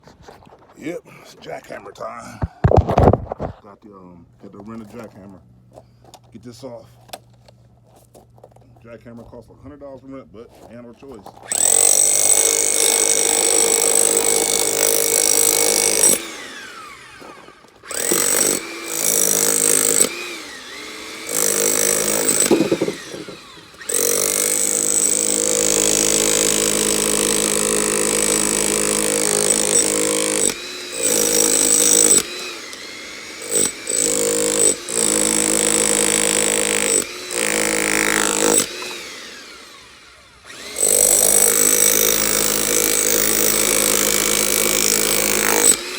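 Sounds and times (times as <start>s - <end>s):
jackhammer hammering: 11.5s - 45.9s.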